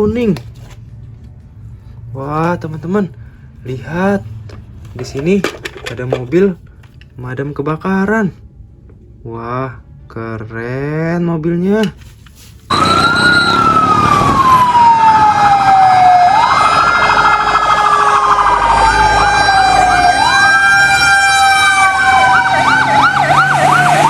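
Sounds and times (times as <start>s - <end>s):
fire truck siren wailing: 12.7s - 24.0s
siren yelps: 12.7s - 24.0s.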